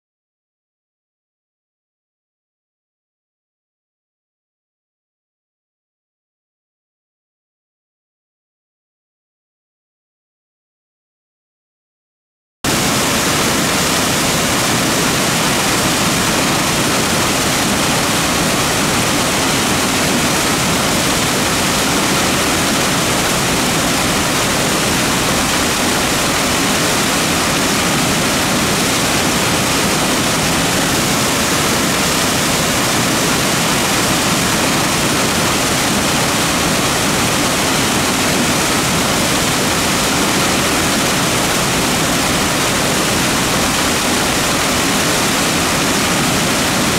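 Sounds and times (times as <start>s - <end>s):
creek water rushing: 12.7s - 46.9s.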